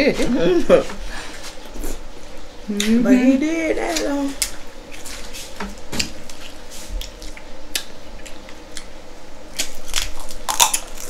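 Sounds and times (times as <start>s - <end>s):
wet eating sounds: 3.8s - 9.0s
crab shell cracking: 9.6s - 11.0s.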